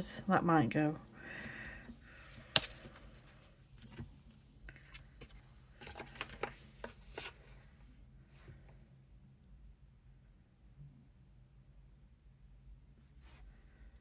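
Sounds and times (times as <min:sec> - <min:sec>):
cards sliding and rubbing: 0:04.7 - 0:07.4.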